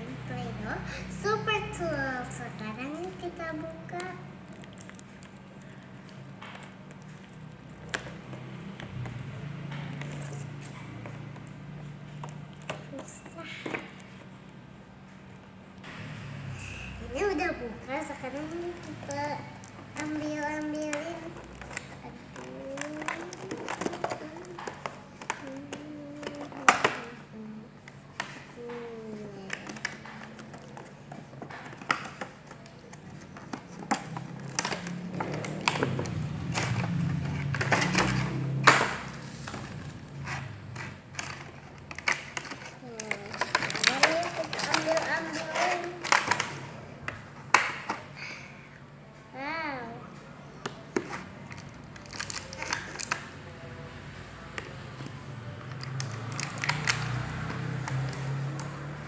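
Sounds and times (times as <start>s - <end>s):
plastic packaging crinkling: 29.3s - 46.8s, 51.3s - 53.3s
plastic toy pieces clicking: 40.8s - 46.7s.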